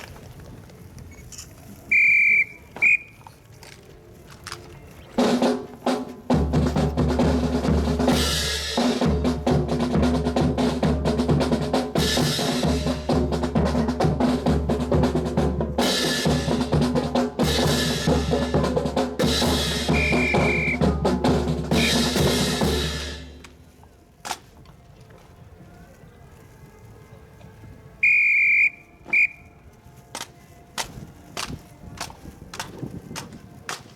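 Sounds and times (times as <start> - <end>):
marching snare and bass drums: 5.2 - 23.6.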